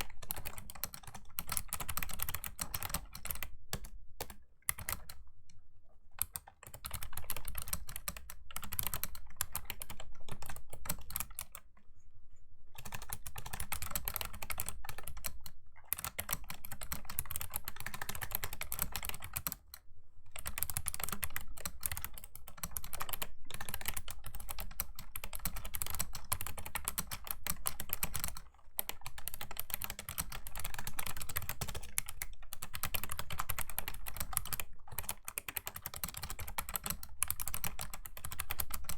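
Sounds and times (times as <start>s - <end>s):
clicky keyboard typing: 0.0s - 5.2s, 6.2s - 11.7s, 12.8s - 19.8s, 20.4s - 38.9s.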